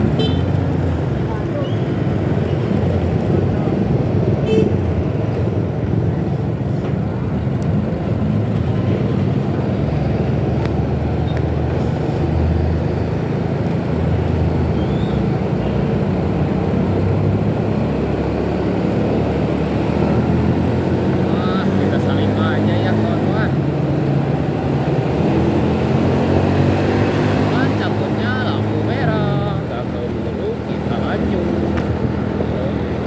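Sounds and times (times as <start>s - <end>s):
motorcycle engine: 0.0s - 6.2s
road traffic: 0.0s - 33.0s.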